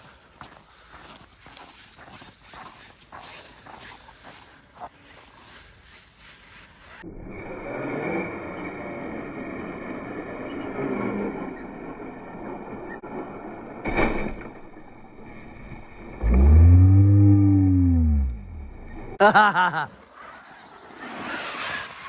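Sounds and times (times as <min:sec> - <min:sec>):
rc truck rumbling: 0:00.4 - 0:22.0
electric motor whine revving: 0:06.2 - 0:11.9, 0:16.2 - 0:18.9.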